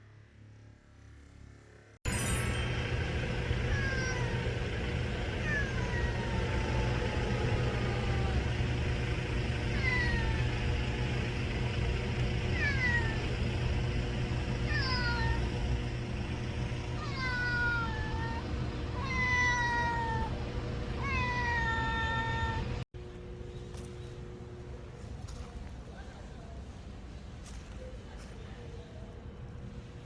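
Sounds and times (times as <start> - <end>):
steady low hum: 0.0 - 30.0
cat meowing: 3.6 - 8.6, 9.7 - 10.7, 12.5 - 13.4, 14.7 - 15.6, 17.0 - 20.4, 21.0 - 22.7.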